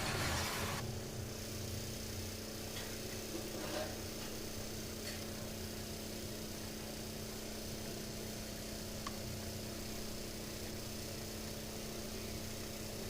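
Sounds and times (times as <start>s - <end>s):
light hiss: 0.0s - 13.0s
steady electrical hum: 0.0s - 13.0s
faint tick: 9.0s - 9.2s.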